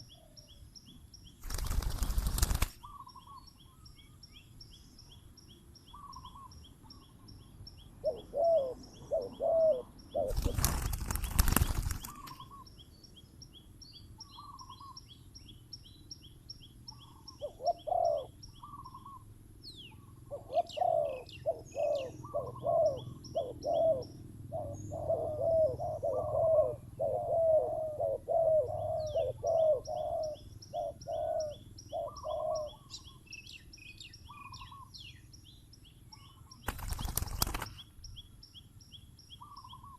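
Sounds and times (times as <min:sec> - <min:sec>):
wing flapping: 0:01.4 - 0:02.8, 0:10.3 - 0:12.4, 0:36.6 - 0:37.9
doves cooing: 0:08.0 - 0:12.6, 0:17.4 - 0:19.2, 0:20.0 - 0:33.2
thin high bird chirps: 0:10.2 - 0:12.7.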